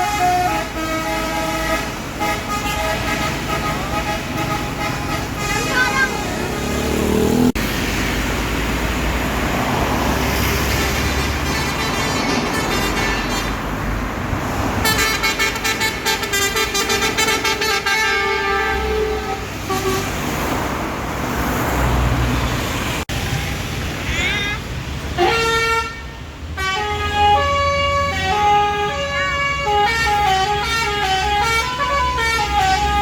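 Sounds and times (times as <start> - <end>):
multi-tone air horn: 0.0 - 6.5, 11.0 - 13.6, 14.8 - 20.2, 25.2 - 33.0
bus engine and road noise: 0.0 - 33.0.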